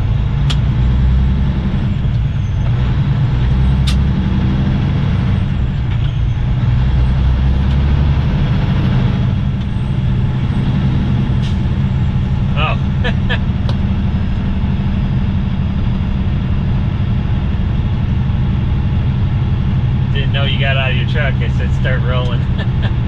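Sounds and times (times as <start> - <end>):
diesel engine drone: 0.0 - 23.0
sharp click: 3.8 - 4.0.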